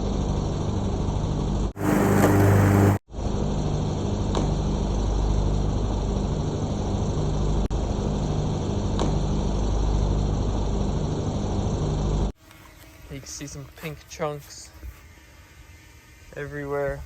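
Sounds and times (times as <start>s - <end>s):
lawn mower engine running: 1.8s - 3.0s.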